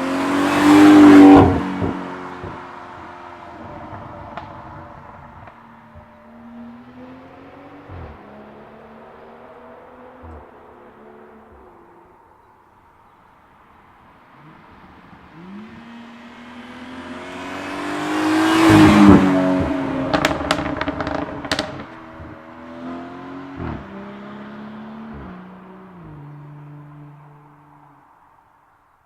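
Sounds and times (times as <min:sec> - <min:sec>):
car engine accelerating past: 0:00.0 - 0:12.5, 0:14.2 - 0:28.1
exhaust crackles and pops: 0:01.4 - 0:06.1, 0:07.9 - 0:08.3, 0:10.2 - 0:10.6, 0:18.6 - 0:22.6, 0:23.6 - 0:24.0.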